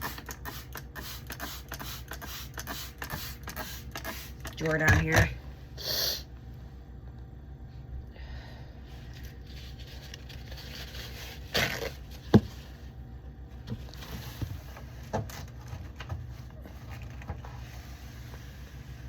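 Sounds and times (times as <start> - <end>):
refrigerator hum: 0.0 - 19.0.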